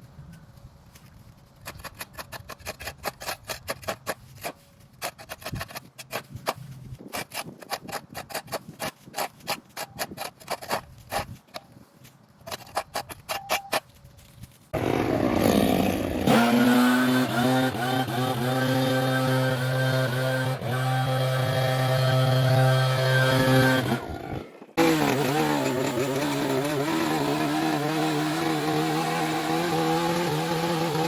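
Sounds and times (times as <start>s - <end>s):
small engine running loudly: 14.8s - 31.0s.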